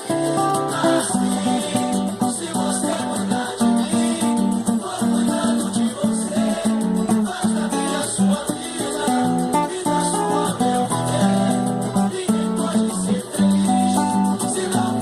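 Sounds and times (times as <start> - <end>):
acoustic guitar strumming: 0.0 - 15.0.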